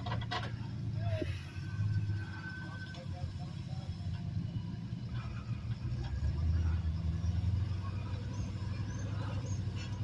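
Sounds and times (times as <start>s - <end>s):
truck engine rumbling under load: 0.0s - 10.0s.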